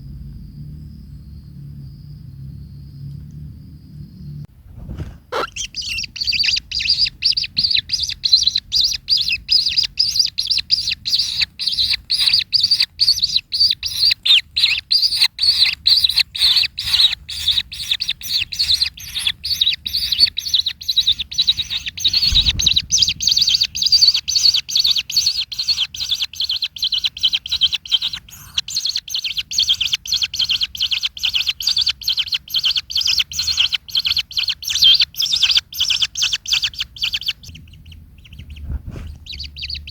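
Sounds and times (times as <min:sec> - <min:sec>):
kingfisher calling: 0:05.3 - 0:22.5.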